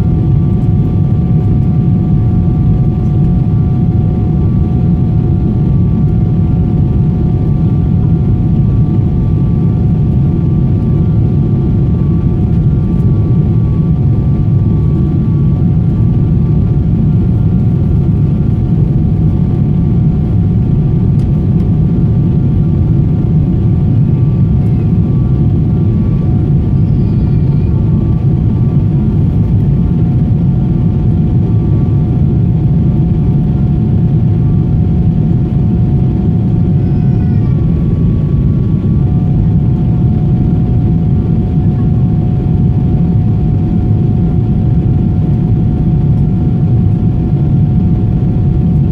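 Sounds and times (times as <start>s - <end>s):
jet engines rumbling in cabin: 0.0s - 48.9s.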